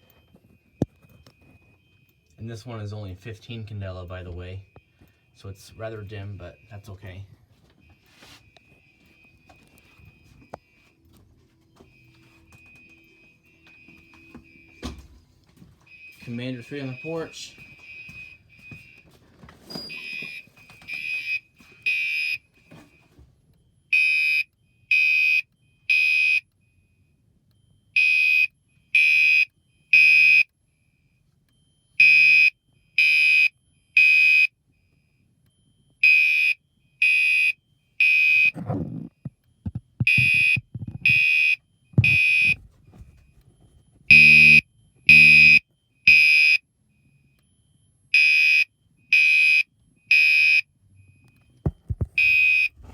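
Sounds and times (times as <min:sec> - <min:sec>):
fire alarm horn blasts: 0:01.2 - 0:11.1, 0:15.9 - 0:19.0, 0:19.8 - 0:22.4, 0:23.8 - 0:26.5, 0:27.9 - 0:30.5, 0:31.6 - 0:34.5, 0:36.0 - 0:38.6, 0:40.0 - 0:43.1, 0:44.1 - 0:47.0, 0:48.0 - 0:51.1, 0:52.0 - 0:52.9.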